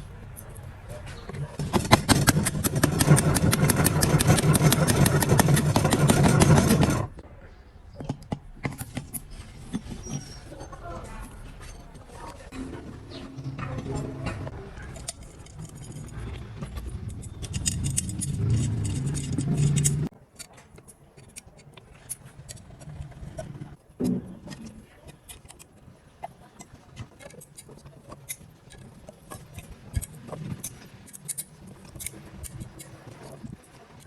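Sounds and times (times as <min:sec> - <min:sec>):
electric motor running: 0:01.2 - 0:07.2, 0:12.5 - 0:20.1.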